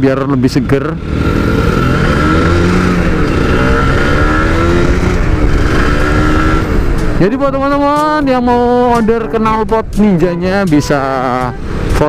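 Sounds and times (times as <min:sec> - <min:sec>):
motorcycle engine revving: 0:00.0 - 0:12.0
road and wind noise: 0:00.0 - 0:12.0.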